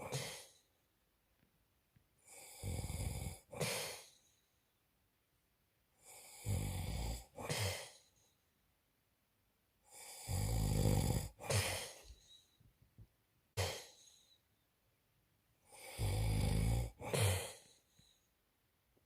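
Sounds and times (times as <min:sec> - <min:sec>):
short snort: 0:00.0 - 0:00.6, 0:02.4 - 0:04.2, 0:06.4 - 0:08.0, 0:10.3 - 0:12.2, 0:13.6 - 0:14.2, 0:15.8 - 0:17.8
man snoring loudly: 0:02.2 - 0:04.0, 0:06.0 - 0:08.0, 0:09.9 - 0:12.0, 0:15.7 - 0:17.7.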